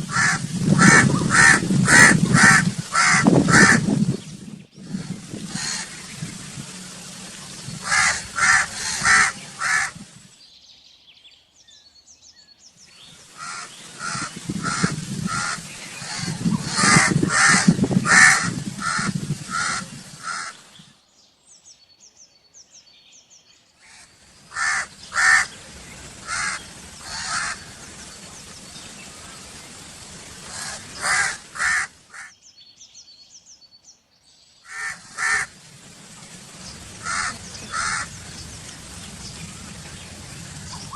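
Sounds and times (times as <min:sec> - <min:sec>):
crows cawing: 0:00.1 - 0:03.8, 0:05.6 - 0:06.0, 0:07.8 - 0:10.0, 0:13.4 - 0:20.6, 0:23.8 - 0:25.5, 0:26.2 - 0:27.8, 0:30.5 - 0:32.4, 0:34.7 - 0:35.5, 0:37.0 - 0:38.1.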